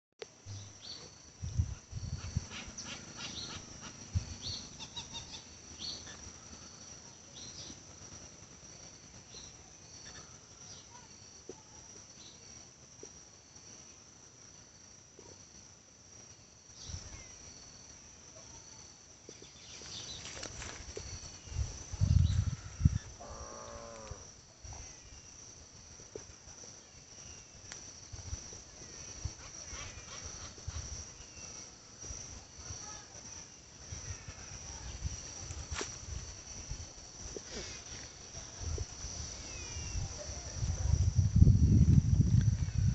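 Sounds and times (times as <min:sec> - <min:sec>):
insects trilling: 0:00.2 - 0:42.9.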